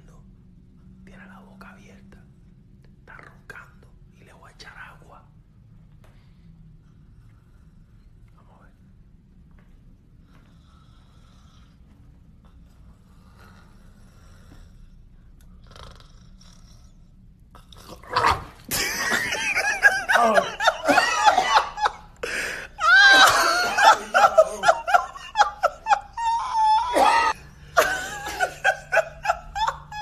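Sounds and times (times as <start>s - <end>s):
loud laughter: 18.6s - 30.0s.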